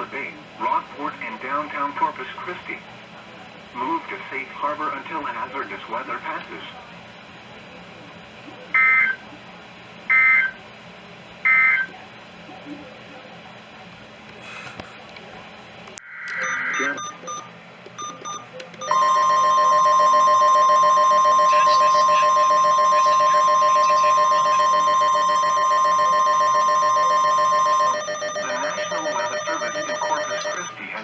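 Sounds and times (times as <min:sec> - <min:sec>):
short data bursts: 0:16.3 - 0:17.4, 0:18.0 - 0:30.8
steady single-pitch alert tone: 0:16.4 - 0:17.4, 0:18.0 - 0:30.8.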